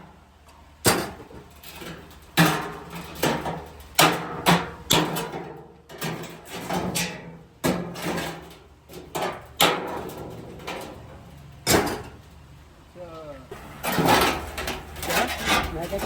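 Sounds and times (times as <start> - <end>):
sheet metal clanking: 13.5 - 16.0.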